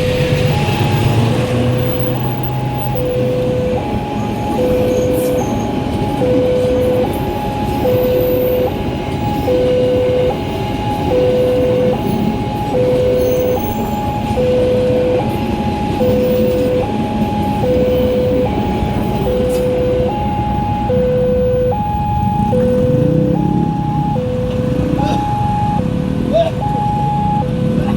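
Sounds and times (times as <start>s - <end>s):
motor rising in pitch: 0.0s - 26.0s
low rumble: 0.0s - 27.4s
two-tone crossing siren: 0.0s - 27.9s.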